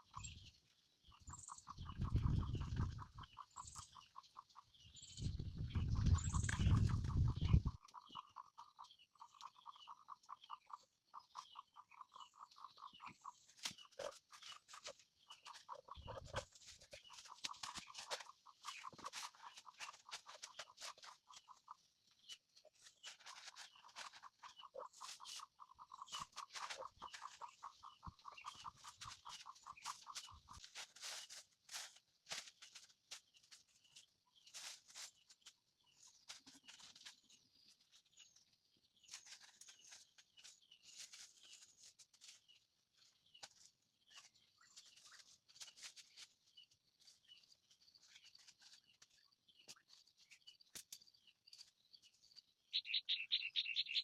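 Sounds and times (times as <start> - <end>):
faint pulsing animal trill: 1.1 - 31.9.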